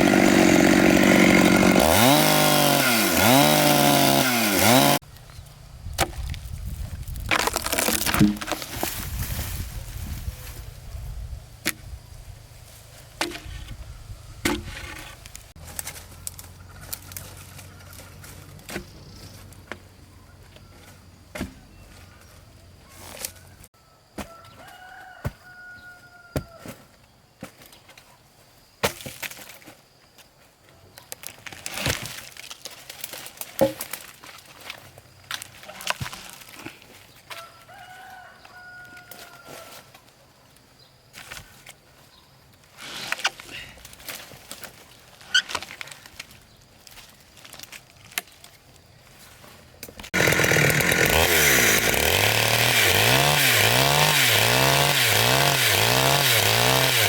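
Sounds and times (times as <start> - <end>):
wood knocking and cracking: 7.1 - 8.9, 33.1 - 34.1
rooster crowing: 23.2 - 26.7, 37.3 - 39.8.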